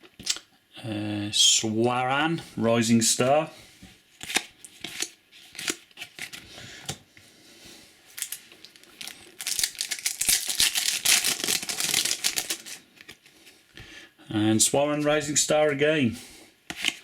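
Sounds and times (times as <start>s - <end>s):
wrapper crinkling: 8.1s - 12.8s.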